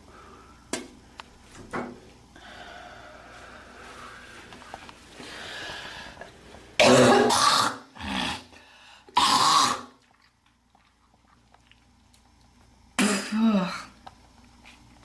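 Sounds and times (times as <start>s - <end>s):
girl hawking and coughing: 6.8s - 7.8s, 13.0s - 13.9s.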